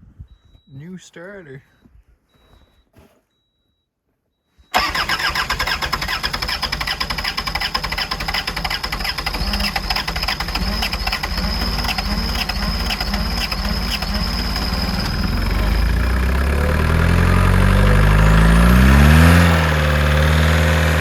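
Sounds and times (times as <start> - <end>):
engine starting and running: 4.6 - 21.0.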